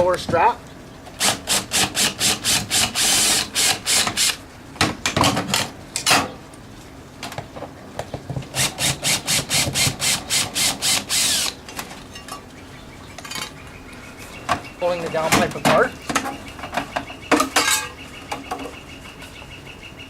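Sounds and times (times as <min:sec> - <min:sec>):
hand tool scraping rhythmically: 0:01.2 - 0:04.4, 0:08.6 - 0:11.6.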